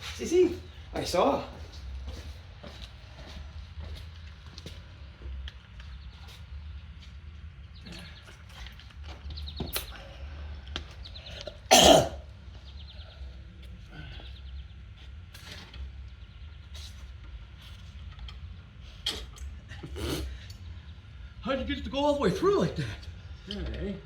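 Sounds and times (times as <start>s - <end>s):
man coughing loudly: 11.7s - 12.2s.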